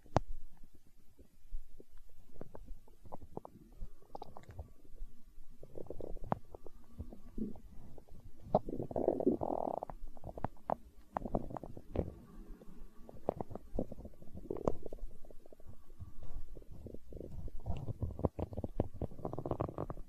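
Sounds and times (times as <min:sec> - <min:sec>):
stomach gurgling and rumbling: 0:00.0 - 0:20.0.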